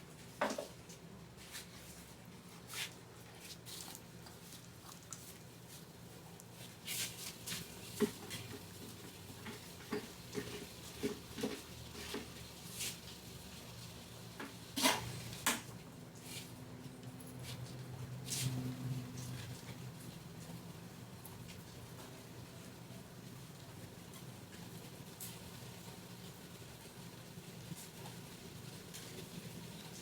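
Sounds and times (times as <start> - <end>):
kitchen items rustling and clicking: 6.9 - 13.0.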